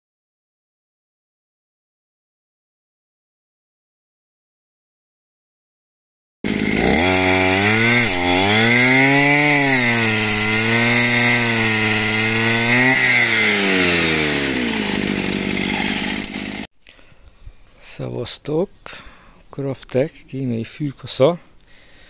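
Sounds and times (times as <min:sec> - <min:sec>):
brush cutter engine running hard: 0:06.5 - 0:16.7.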